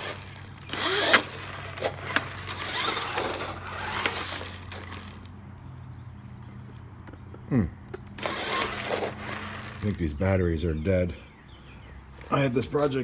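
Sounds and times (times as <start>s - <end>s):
electric motor and gears whirring: 0.0s - 5.6s, 6.8s - 10.4s.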